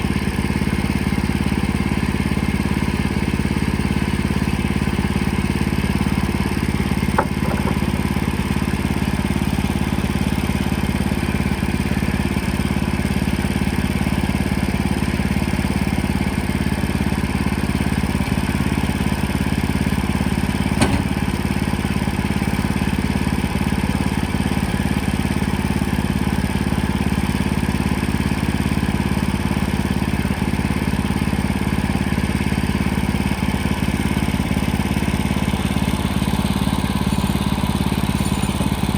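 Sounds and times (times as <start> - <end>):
sawmill engine running: 0.0 - 38.9
sharp knocks: 7.2 - 7.9, 20.8 - 21.4.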